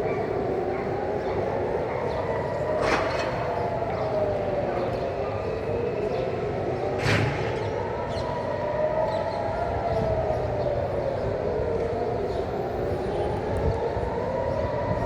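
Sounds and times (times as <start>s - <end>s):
sirens wailing: 0.0s - 15.0s.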